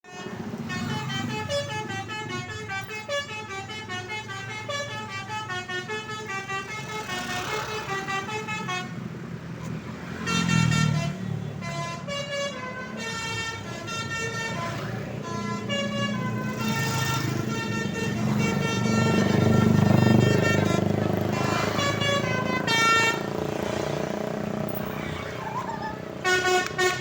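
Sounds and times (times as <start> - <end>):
bus musical air horn: 0.0 - 9.2, 10.0 - 27.0.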